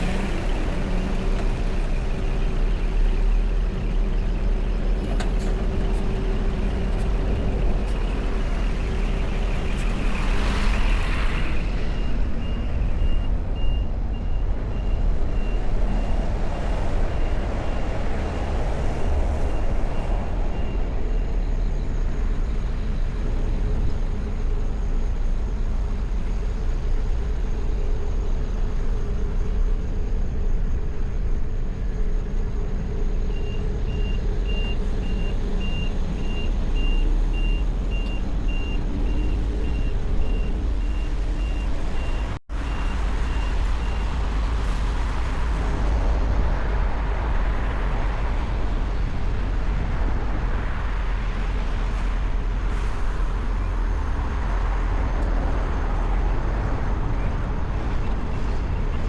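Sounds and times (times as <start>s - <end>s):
city traffic rumble: 0.0s - 59.0s.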